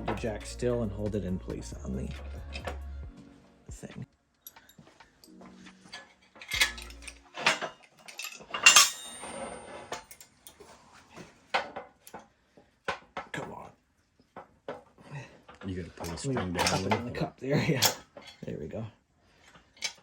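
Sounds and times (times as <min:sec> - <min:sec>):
metal tools clanking together: 0:04.4 - 0:10.6, 0:15.5 - 0:18.6, 0:19.6 - 0:20.0.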